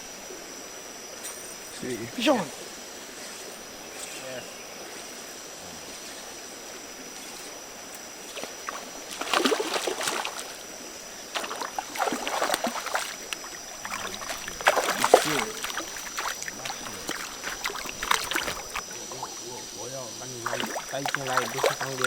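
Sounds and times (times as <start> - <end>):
high hiss of insects: 0.0 - 22.0
river water splashing: 6.0 - 22.0.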